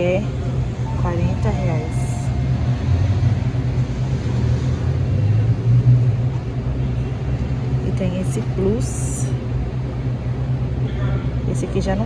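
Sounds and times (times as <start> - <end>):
machinery rumble and hum: 0.0 - 12.0.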